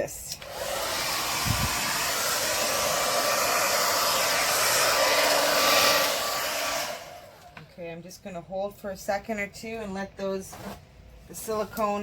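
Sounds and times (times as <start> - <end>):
hair dryer running: 0.3 - 7.6.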